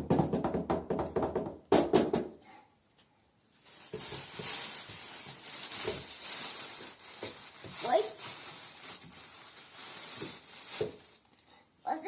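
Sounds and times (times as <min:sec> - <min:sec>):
person speaking: 0:07.7 - 0:08.4.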